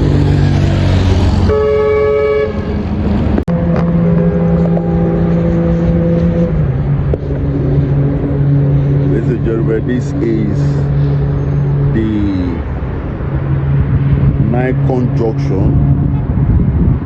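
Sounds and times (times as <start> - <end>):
road traffic engine hum: 0.0 - 17.0
car horn: 1.4 - 7.1.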